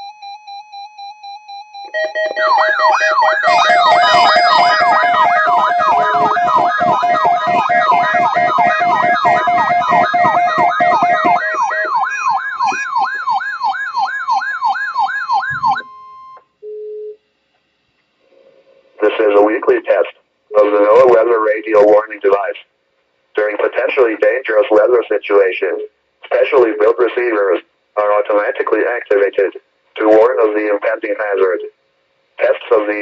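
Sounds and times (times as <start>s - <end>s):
steady alarm tones: 0.0s - 16.4s
short beeps: 1.8s - 3.4s
electronic siren wailing: 1.8s - 16.2s.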